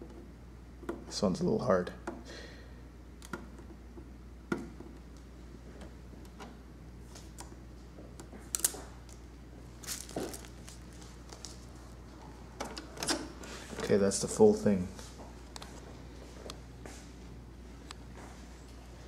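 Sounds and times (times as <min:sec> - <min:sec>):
steady low hum: 0:00.0 - 0:19.0
plastic film crinkling: 0:08.5 - 0:11.9.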